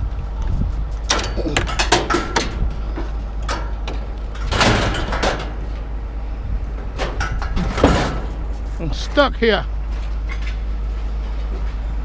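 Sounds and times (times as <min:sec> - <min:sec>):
steady low rumble: 0:00.0 - 0:12.0
scrap metal knocks: 0:06.9 - 0:08.6.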